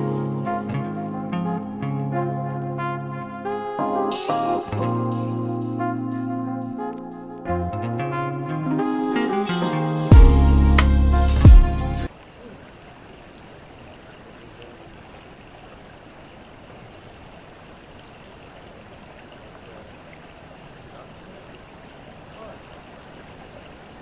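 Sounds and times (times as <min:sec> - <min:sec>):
background music: 0:00.0 - 0:12.1
creek water flowing: 0:08.5 - 0:24.0.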